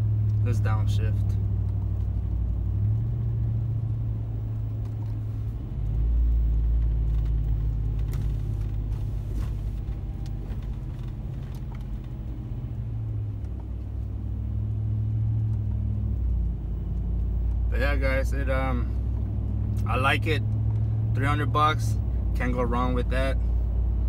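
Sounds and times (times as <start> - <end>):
engine exhaust rumble: 0.0 - 24.0.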